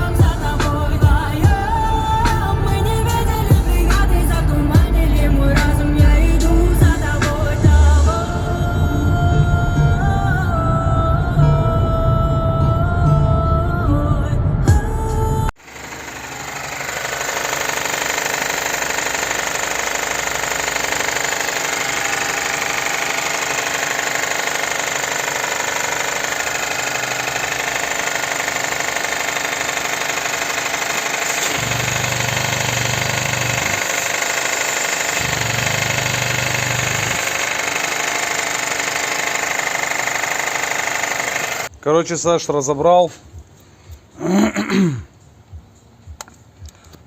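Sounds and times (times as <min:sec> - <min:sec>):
car engine running: 0:00.0 - 0:08.9, 0:14.7 - 0:41.7
deeper hum: 0:00.0 - 0:41.8
metallic knocking rattle: 0:15.9 - 0:41.7.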